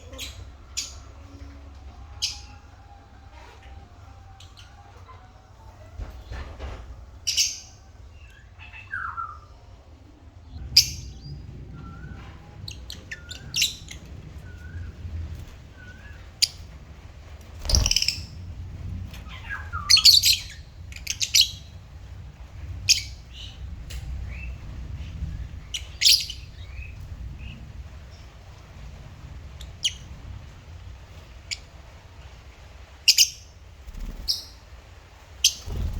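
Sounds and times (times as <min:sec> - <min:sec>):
lovebirds chirping and squawking: 0:00.0 - 0:05.2, 0:06.0 - 0:09.8, 0:10.4 - 0:35.9
low steady background hum: 0:00.0 - 0:35.9
soft whistled bird notes: 0:10.8 - 0:16.3.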